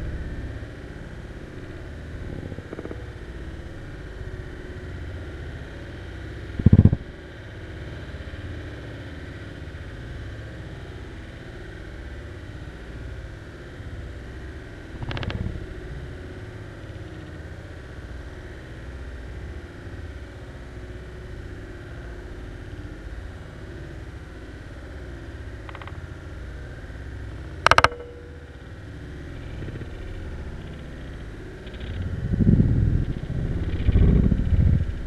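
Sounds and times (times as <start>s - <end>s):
low rumbling noise: 0.0s - 8.4s, 12.0s - 35.0s
sharp click with ringing tone: 27.6s - 28.6s.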